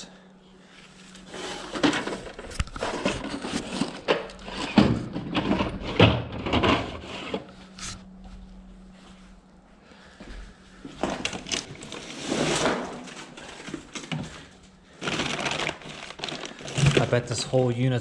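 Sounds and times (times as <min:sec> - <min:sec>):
objects rummaged through by hand: 0:00.9 - 0:07.5, 0:10.9 - 0:17.4.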